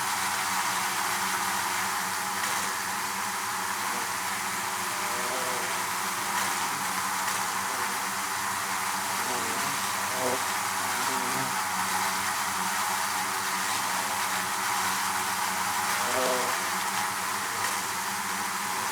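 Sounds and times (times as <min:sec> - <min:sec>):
bees buzzing: 0:00.4 - 0:18.9
single bee buzzing: 0:03.7 - 0:12.6, 0:13.4 - 0:17.8.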